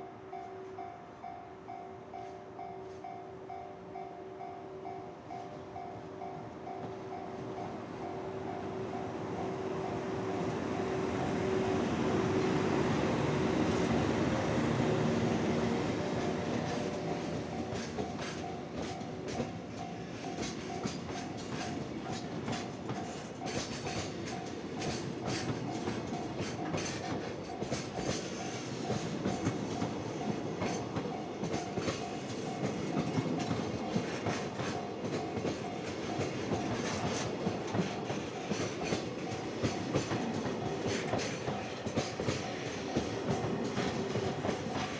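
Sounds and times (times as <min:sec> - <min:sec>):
freight wagons clicking over rails: 0:15.6 - 0:44.9.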